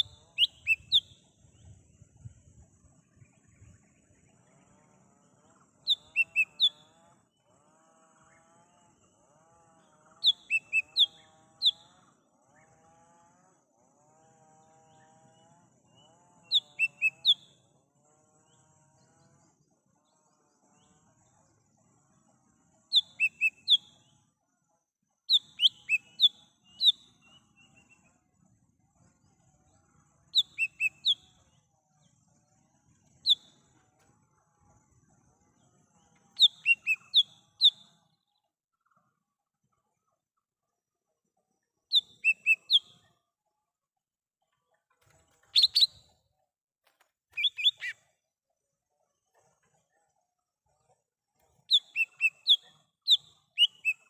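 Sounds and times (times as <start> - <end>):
bird sharp high chirps: 0.0 - 1.2, 5.9 - 6.9, 10.2 - 11.9, 16.5 - 17.6, 22.9 - 24.0, 25.3 - 28.0, 30.3 - 31.4, 36.3 - 38.0, 41.9 - 43.1, 45.4 - 46.1, 47.3 - 48.0, 51.6 - 54.0.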